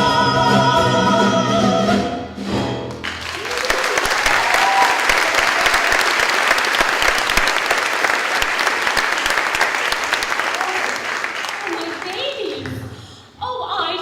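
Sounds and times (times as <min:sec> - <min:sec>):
audience applause: 0:03.0 - 0:12.8.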